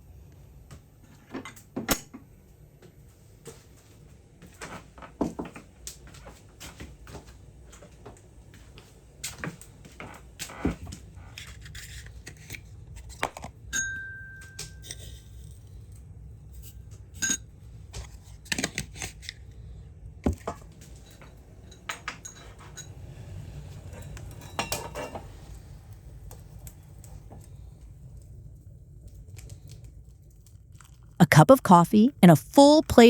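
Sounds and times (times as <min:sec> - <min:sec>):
dishes and utensils clinking: 0:17.2 - 0:17.4, 0:21.8 - 0:23.0.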